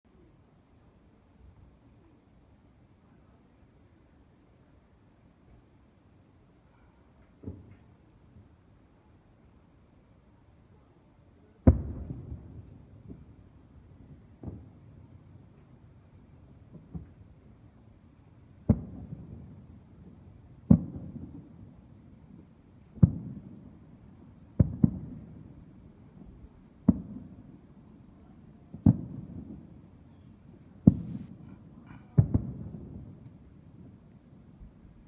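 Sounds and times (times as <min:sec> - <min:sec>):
distant fireworks booming: 0:11.6 - 0:13.4, 0:14.1 - 0:15.0, 0:18.6 - 0:19.7, 0:20.7 - 0:21.6, 0:24.6 - 0:25.5, 0:26.2 - 0:27.7, 0:28.7 - 0:29.7, 0:30.8 - 0:33.9.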